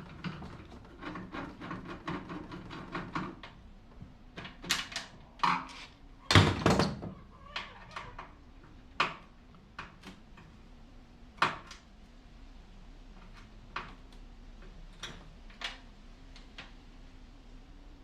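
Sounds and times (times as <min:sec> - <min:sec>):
hand tools clicking and knocking: 0:00.0 - 0:03.6.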